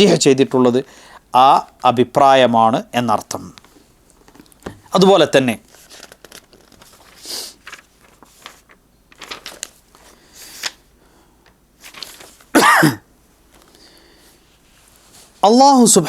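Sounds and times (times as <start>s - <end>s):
man breathing sharply: 0.9s - 1.3s, 13.7s - 14.5s
small clicks and rustles: 5.6s - 10.8s.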